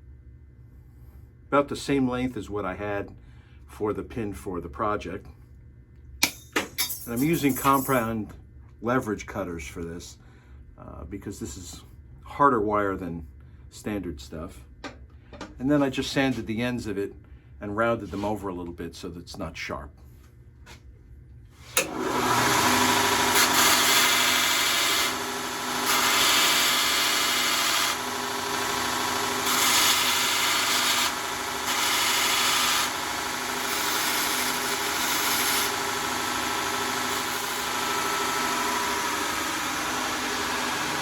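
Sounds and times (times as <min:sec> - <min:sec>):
metal pin grinding on abrasive: 0:06.2 - 0:08.1, 0:21.8 - 0:41.0
electric power sander running: 0:21.8 - 0:41.0.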